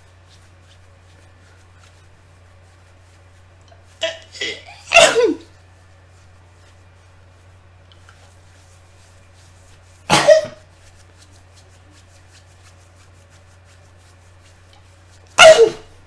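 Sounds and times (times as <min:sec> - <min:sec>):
person sneezing loudly: 0:04.0 - 0:05.5, 0:10.1 - 0:10.6, 0:15.4 - 0:16.0.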